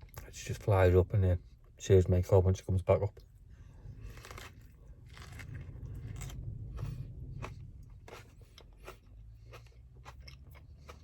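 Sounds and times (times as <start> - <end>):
low steady rumble: 0.0 - 11.0
person chewing crunchy food: 4.0 - 11.0.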